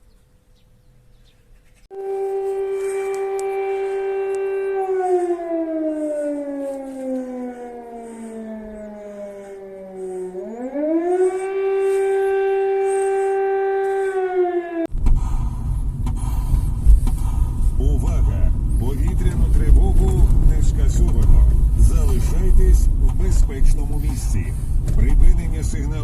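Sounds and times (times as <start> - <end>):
air-raid siren wailing: 1.9 - 14.9
loud low rumble: 14.9 - 26.0.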